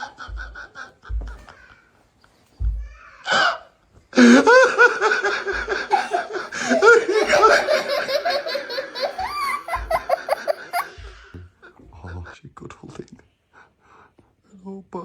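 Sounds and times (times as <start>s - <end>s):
person laughing hard: 4.2s - 11.2s.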